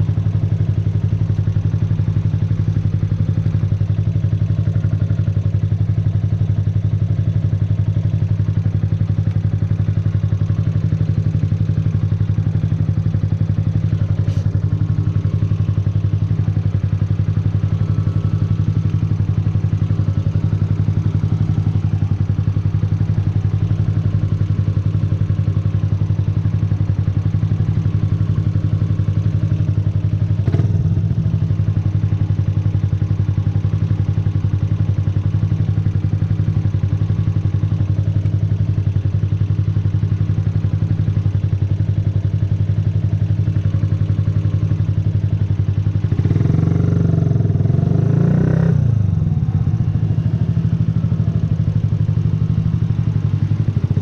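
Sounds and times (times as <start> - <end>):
motorcycle engine idling: 0.0 - 54.0
motorcycle engine revving: 9.8 - 32.2, 43.0 - 54.0.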